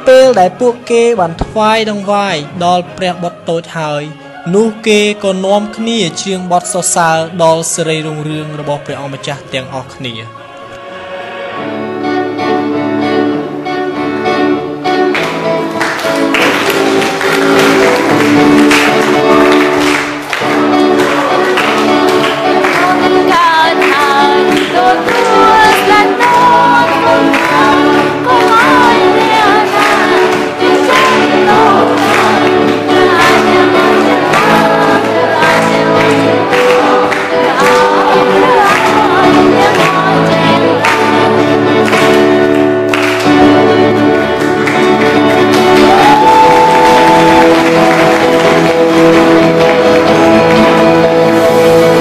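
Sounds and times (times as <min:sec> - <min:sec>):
instrumental accompaniment: 0:00.0 - 0:52.0
group singing a hymn: 0:08.0 - 0:12.8, 0:16.3 - 0:52.0.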